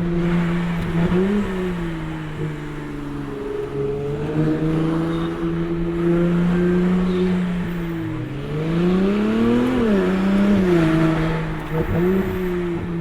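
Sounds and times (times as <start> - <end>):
sports car engine revving: 8.5 - 13.0.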